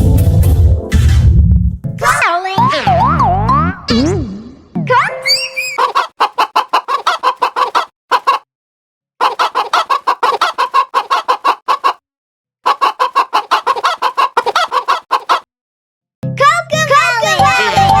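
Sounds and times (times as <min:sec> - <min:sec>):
rapid clucking: 0:05.8 - 0:08.4, 0:09.2 - 0:12.0, 0:12.7 - 0:15.5.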